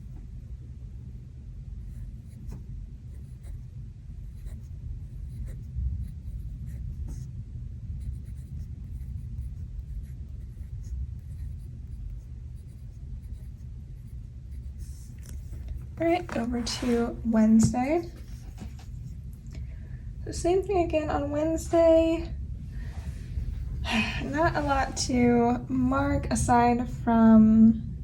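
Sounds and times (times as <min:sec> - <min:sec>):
thunderstorm rumble: 0:19.9 - 0:28.0.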